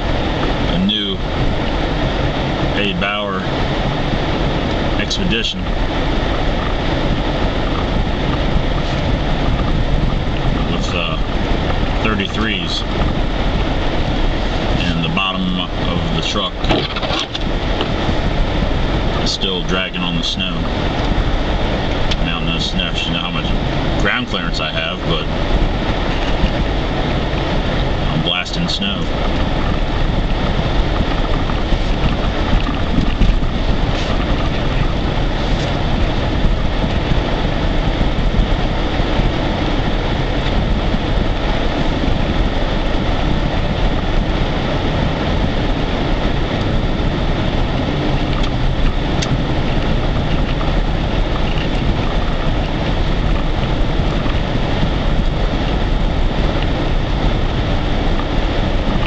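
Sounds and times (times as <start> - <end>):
engine working hard: 0.0 - 59.0
snow dragging under truck: 0.0 - 59.0
tyres churning snow: 0.0 - 59.0.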